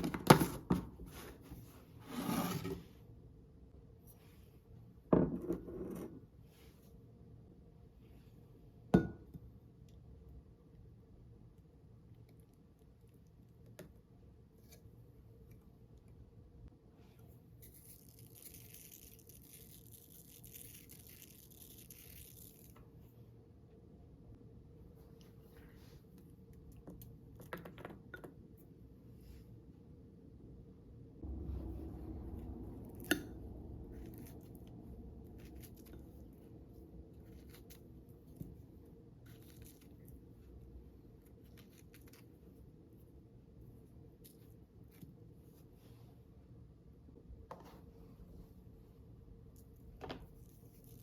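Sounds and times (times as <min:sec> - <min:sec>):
rustles and light scrapes: 0:00.8 - 0:03.0, 0:25.0 - 0:26.3.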